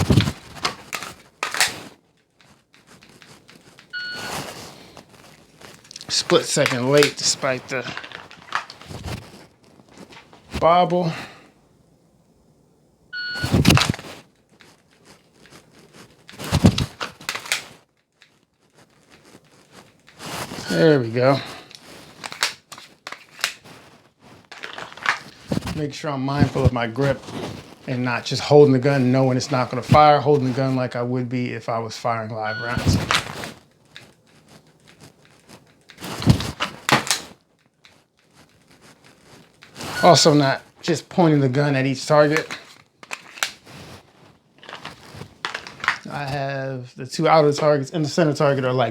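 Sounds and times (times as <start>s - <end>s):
gun handling clatter: 0.0s - 10.5s, 13.5s - 28.2s, 32.6s - 46.1s.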